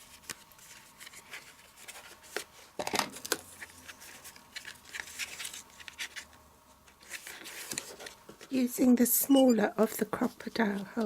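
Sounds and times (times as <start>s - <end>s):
cardstock rustling and crackling: 0.0s - 8.7s.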